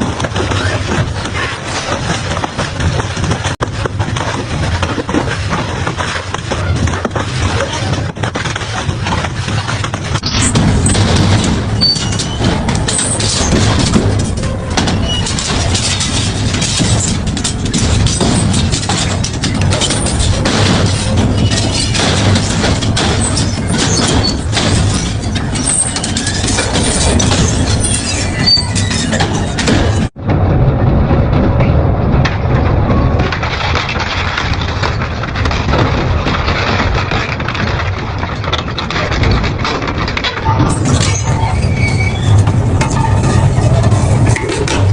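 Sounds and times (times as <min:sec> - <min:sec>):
low rumble: 0:00.0 - 0:44.9
sharp cracks: 0:00.0 - 0:44.9
shredder cracking and crunching: 0:32.2 - 0:44.9.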